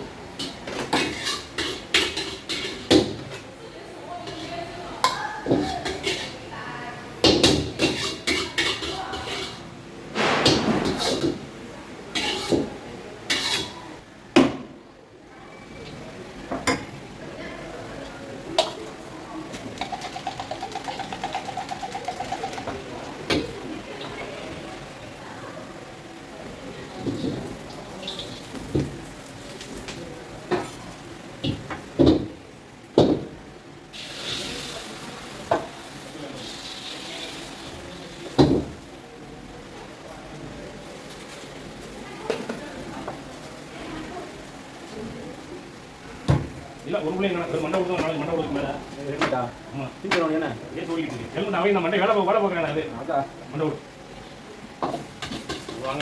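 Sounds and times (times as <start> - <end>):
food sizzling in a pan: 0.1 - 3.4, 4.2 - 14.1, 17.6 - 52.3, 53.8 - 56.0
cookware knocking and scraping: 10.2 - 11.4.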